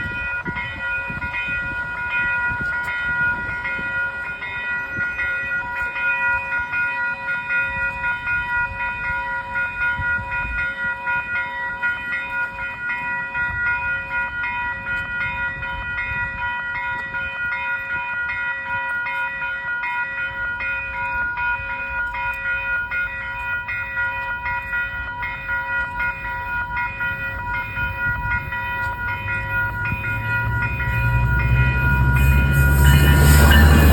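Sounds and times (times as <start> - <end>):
train rumble: 20.3 - 33.9
high ringing tone: 20.4 - 33.9.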